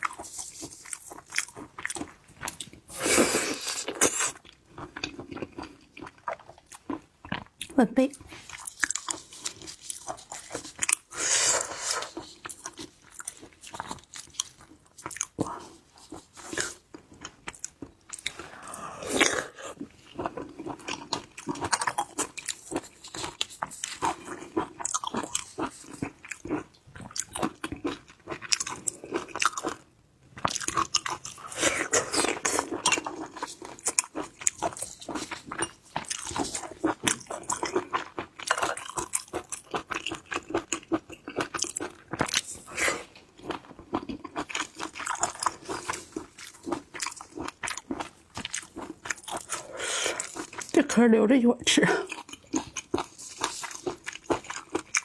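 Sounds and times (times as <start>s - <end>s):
chewing crunchy shellfish: 0.0s - 50.9s, 52.0s - 55.0s.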